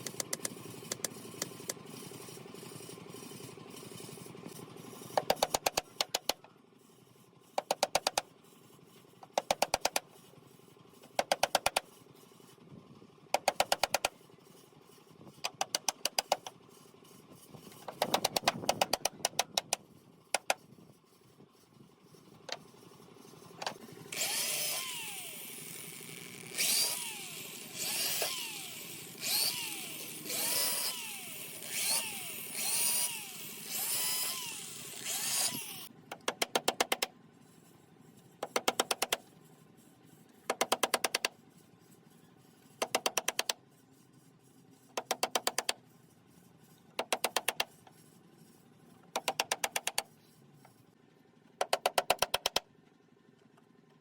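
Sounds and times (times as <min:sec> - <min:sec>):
power tool rapid clicking: 0:15.4 - 0:16.5, 0:17.8 - 0:19.8, 0:24.1 - 0:37.1.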